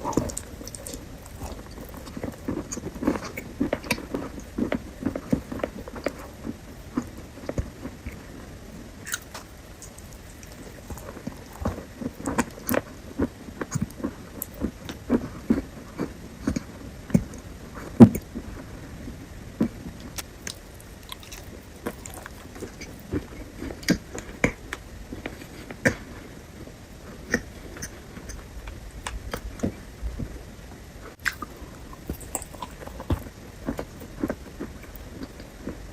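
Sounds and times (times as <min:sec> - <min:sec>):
person chewing crunchy fruit: 0:00.0 - 0:18.7, 0:19.6 - 0:26.2, 0:27.1 - 0:30.3, 0:31.1 - 0:35.9.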